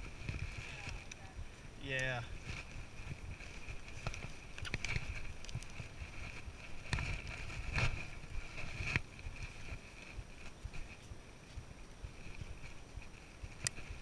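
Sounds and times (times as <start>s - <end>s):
wind rumbling on microphone: 0.0s - 14.0s.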